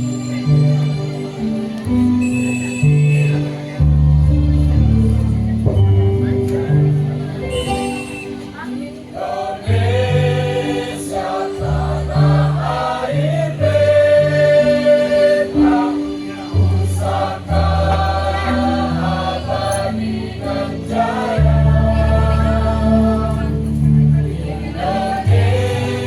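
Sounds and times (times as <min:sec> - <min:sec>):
low backing notes: 0:00.0 - 0:26.0
choir singing in parts: 0:09.0 - 0:26.0.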